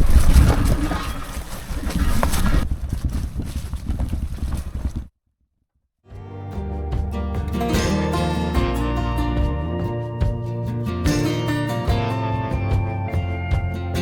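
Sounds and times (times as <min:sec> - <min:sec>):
bike rattling and knocking: 0:00.0 - 0:05.1
wind rumbling on microphone: 0:00.0 - 0:05.1
acoustic guitar music: 0:06.1 - 0:14.0.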